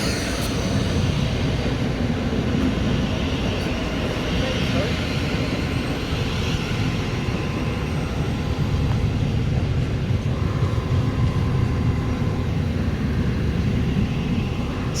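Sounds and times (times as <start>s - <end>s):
train rumbling: 0.0s - 15.0s.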